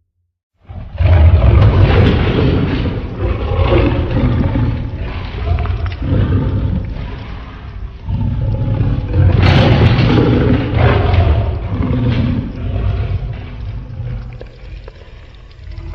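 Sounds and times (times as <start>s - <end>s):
growling monster roar: 0.6s - 15.9s
deep rumble: 0.8s - 15.9s.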